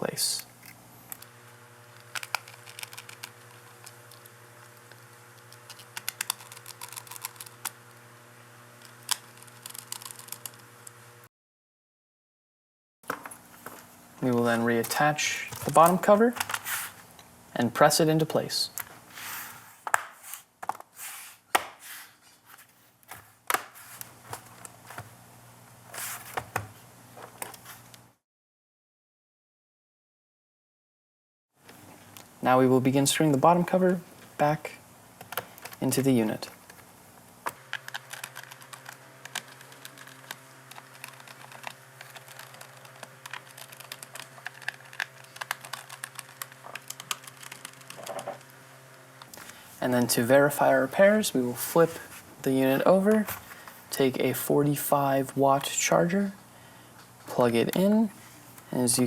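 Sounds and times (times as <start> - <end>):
faint steady hum: 0.0 - 11.3, 31.6 - 59.0
rubbing and handling noise: 13.2 - 17.2, 18.9 - 25.2, 25.9 - 28.0, 49.3 - 54.2.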